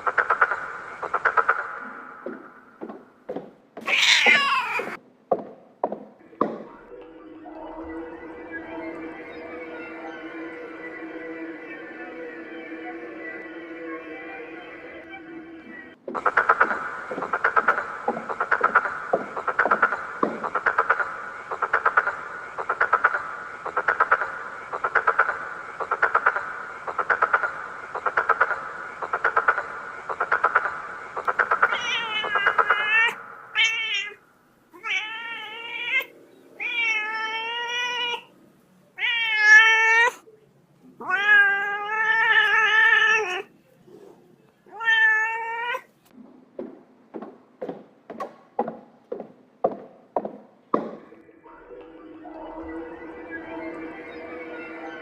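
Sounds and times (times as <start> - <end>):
cat meowing: 3.9 - 5.0, 31.6 - 34.2, 34.8 - 38.3, 39.0 - 40.2, 41.0 - 43.5, 44.7 - 45.9.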